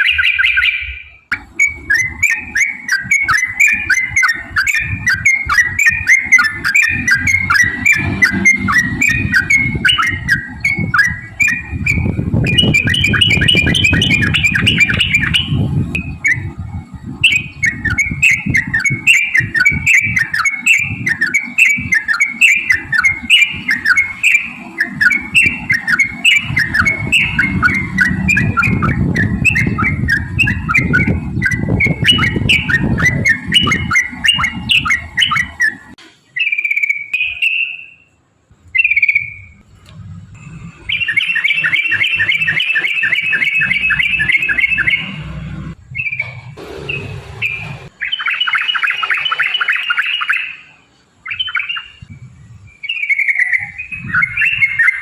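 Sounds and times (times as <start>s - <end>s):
bird singing chattering phrases: 0.0s - 38.1s, 40.5s - 45.3s, 45.9s - 55.0s
low rumble: 22.8s - 36.0s, 38.5s - 42.5s, 43.3s - 48.0s.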